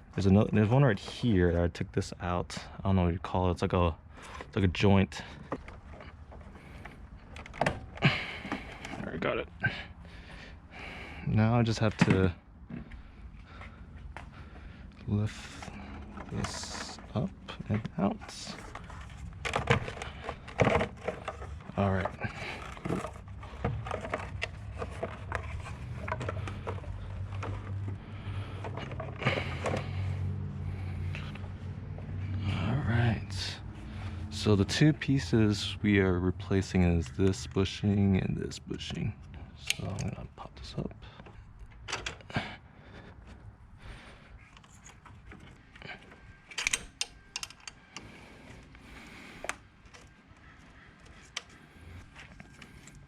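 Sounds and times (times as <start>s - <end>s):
handling noise: 11.8s - 32.3s
plastic parts and tools clicking: 18.6s - 30.2s, 44.4s - 53.0s.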